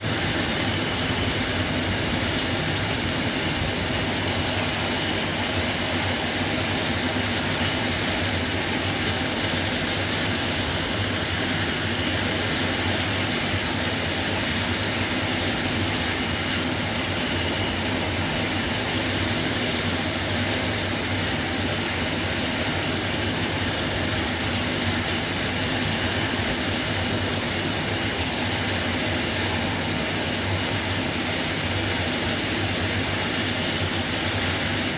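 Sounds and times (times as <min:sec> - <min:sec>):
turboprop engines whining: 0:00.0 - 0:34.9.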